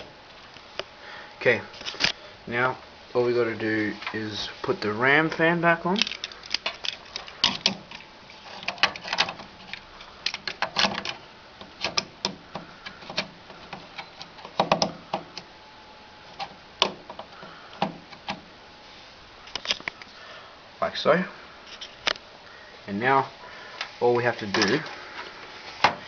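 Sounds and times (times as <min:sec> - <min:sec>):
clicks and knocks of fan handling: 0:08.6 - 0:15.5, 0:16.4 - 0:18.5.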